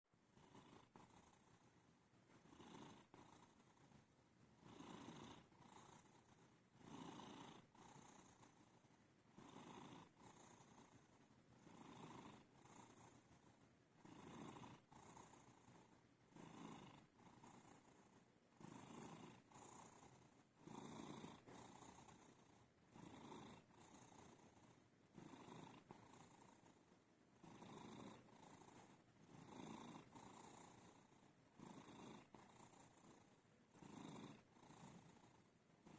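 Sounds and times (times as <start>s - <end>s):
cat snoring softly: 0.2s - 35.9s.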